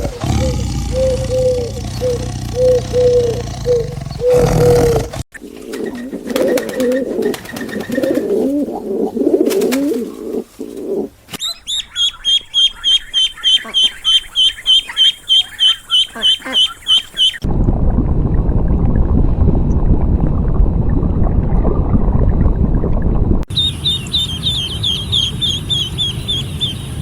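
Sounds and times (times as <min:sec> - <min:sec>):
bird cooing: 0:00.0 - 0:11.1
high bird chirps: 0:11.4 - 0:17.4, 0:23.5 - 0:27.0.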